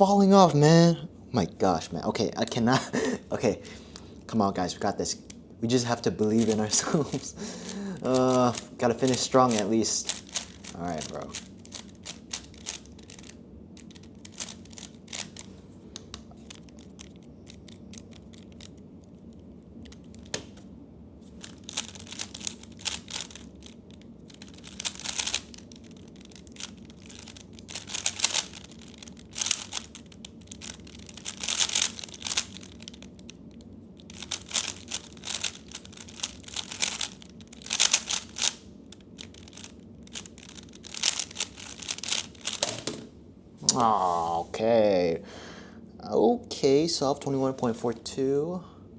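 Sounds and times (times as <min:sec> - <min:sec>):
speed cube clicking turns: 0:05.3 - 0:20.7, 0:21.4 - 0:42.9.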